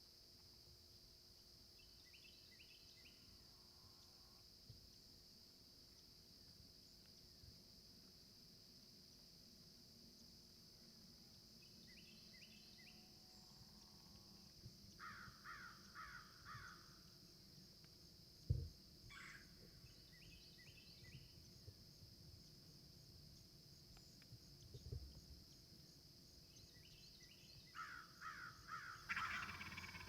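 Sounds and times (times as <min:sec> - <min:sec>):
insect drone: 0:00.0 - 0:30.0
dull thump: 0:18.5 - 0:18.7
birds calling: 0:28.8 - 0:30.0.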